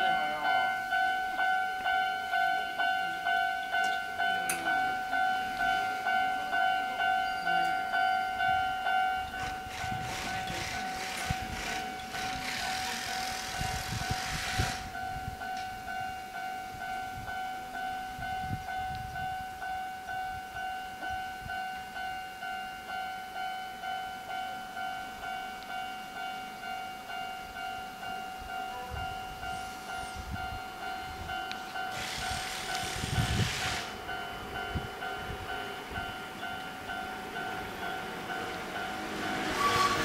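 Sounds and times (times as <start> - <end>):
level crossing bell dinging: 0.0 - 9.3
train rattling through crossing: 0.0 - 40.0.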